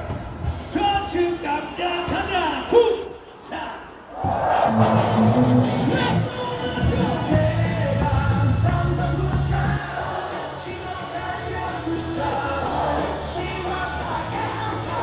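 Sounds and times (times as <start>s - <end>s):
crowd singing along: 4.1s - 15.0s
cheer music over loudspeakers: 4.2s - 15.0s
heavy bass beat: 4.7s - 9.9s.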